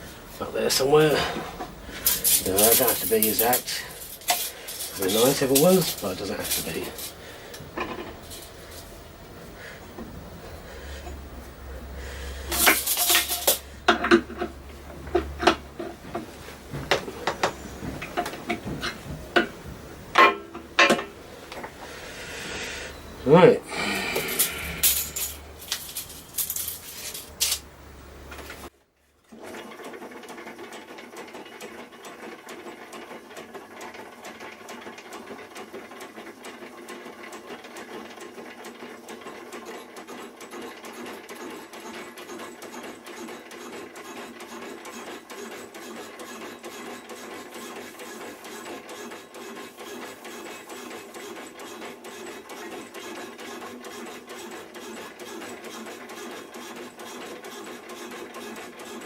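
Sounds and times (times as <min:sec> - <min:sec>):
power saw cutting metal: 0:00.4 - 0:19.5, 0:21.9 - 0:27.6, 0:41.6 - 0:59.0.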